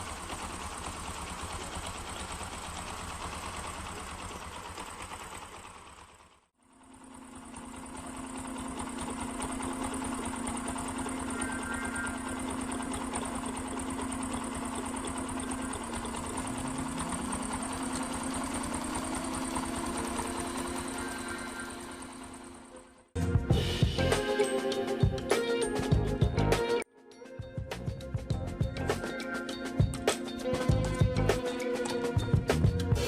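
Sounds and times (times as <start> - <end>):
small machine buzzing hum: 0.0 - 26.3
rising tone: 10.6 - 14.1, 15.3 - 26.8.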